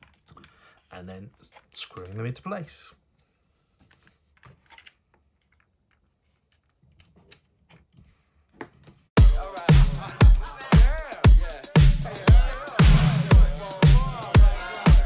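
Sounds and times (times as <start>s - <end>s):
loud dance music: 9.2s - 15.0s.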